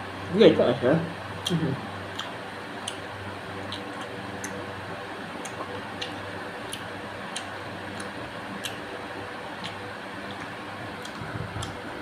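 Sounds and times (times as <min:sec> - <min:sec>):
mouth chewing candy: 0:03.6 - 0:04.6.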